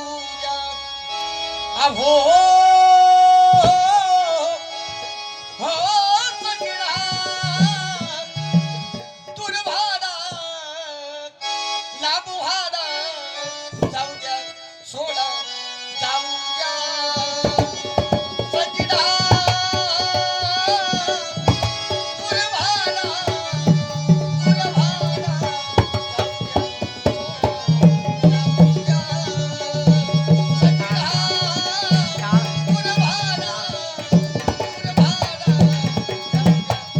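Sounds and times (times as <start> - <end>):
hand drumming: 17.2 - 36.9.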